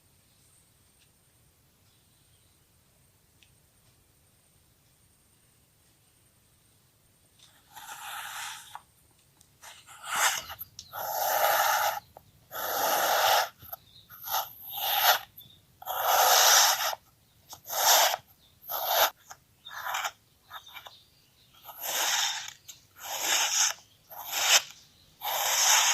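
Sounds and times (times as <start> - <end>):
sand being cut crunching: 7.7 - 8.8, 9.6 - 21.0, 21.6 - 25.9.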